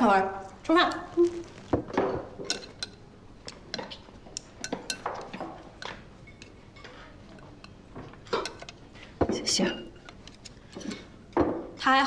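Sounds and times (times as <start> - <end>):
dishes and cutlery clinking: 1.3 - 12.0.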